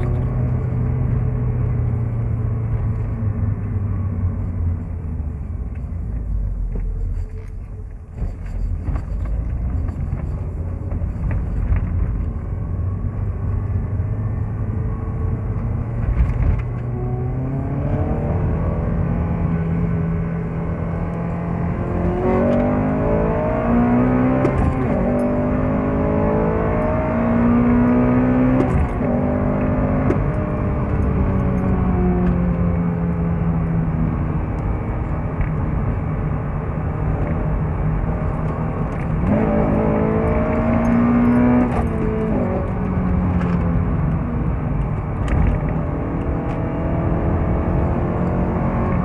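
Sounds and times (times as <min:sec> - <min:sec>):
car engine accelerating: 0:00.0 - 0:49.0.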